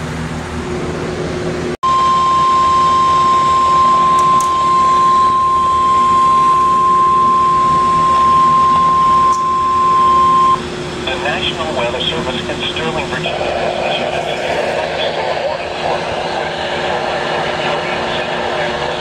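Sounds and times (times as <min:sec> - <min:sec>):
long high warning beep: 0:01.8 - 0:10.6
radio hum and hiss: 0:11.0 - 0:19.0.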